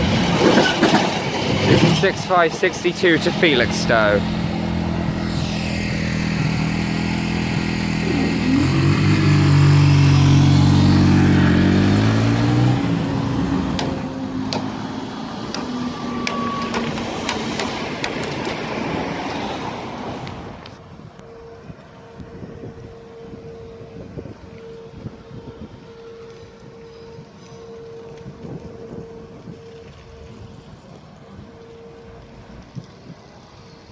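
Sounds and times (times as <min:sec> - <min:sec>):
wagon wheels clicking over rails: 0:00.0 - 0:05.6, 0:06.3 - 0:20.8
diesel locomotive passing: 0:00.0 - 0:33.9.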